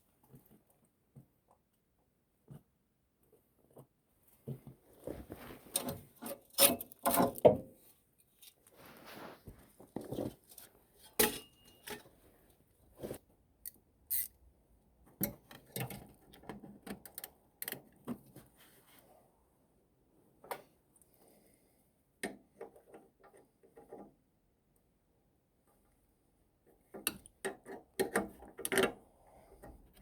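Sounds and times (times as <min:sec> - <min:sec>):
metal tools clinking and scraping: 0:10.5 - 0:12.1.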